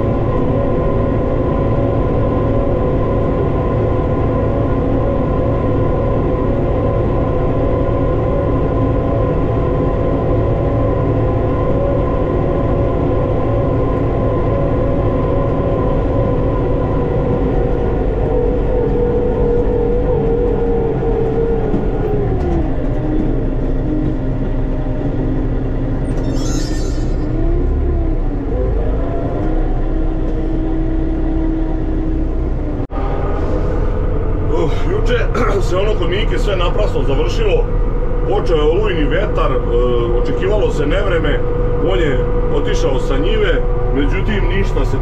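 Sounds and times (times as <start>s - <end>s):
tractor engine running: 0.0s - 26.2s, 27.2s - 45.0s.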